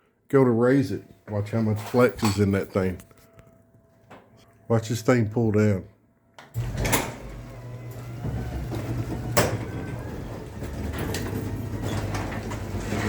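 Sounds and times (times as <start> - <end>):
garage door opener running: 6.5 - 13.0.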